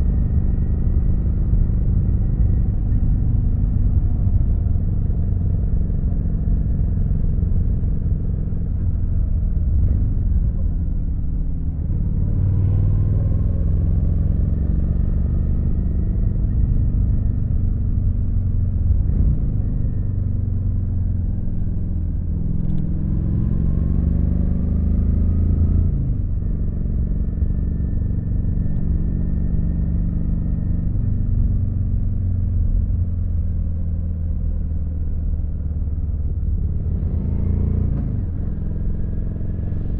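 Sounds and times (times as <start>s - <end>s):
motorcycle engine running: 26.2s - 39.9s.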